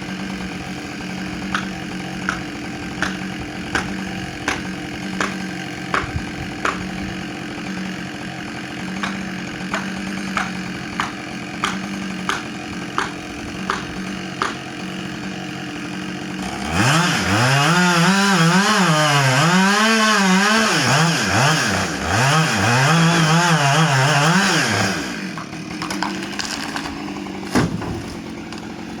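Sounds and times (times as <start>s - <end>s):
chainsaw revving and idling: 0.0s - 29.0s.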